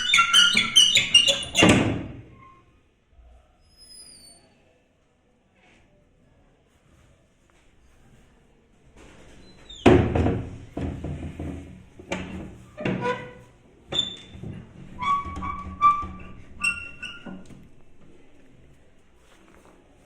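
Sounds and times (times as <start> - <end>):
creaking hinge squeaks: 0.0 - 2.7, 12.8 - 17.6.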